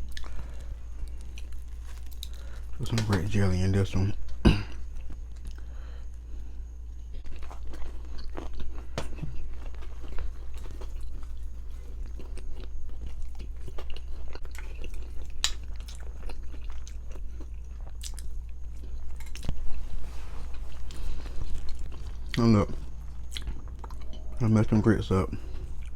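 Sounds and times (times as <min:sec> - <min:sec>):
biting and chewing biscuit: 0:00.0 - 0:03.3, 0:04.8 - 0:24.3
steady low hum: 0:00.0 - 0:25.9.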